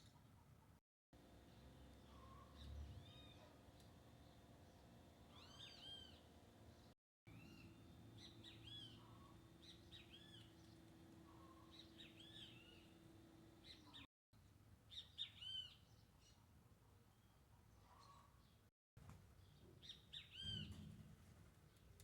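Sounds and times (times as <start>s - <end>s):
songbirds chirping: 0.0s - 14.1s
faint steady hum: 1.2s - 14.0s.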